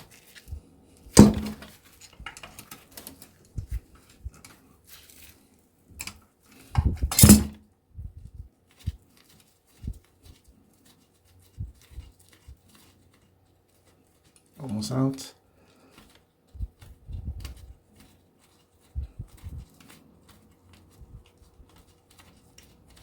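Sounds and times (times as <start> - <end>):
metal clank: 1.2 - 1.7, 7.1 - 7.6
metal clatter: 7.1 - 7.6
metal tools clinking on metal: 7.1 - 7.6.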